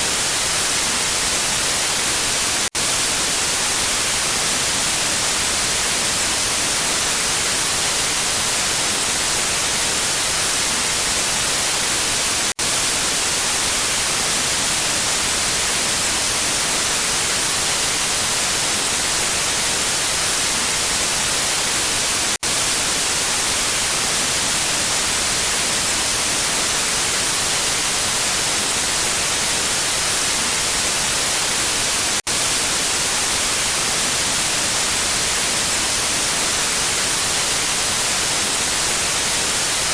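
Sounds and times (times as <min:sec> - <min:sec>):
white-noise static hiss: 0:00.0 - 0:39.9.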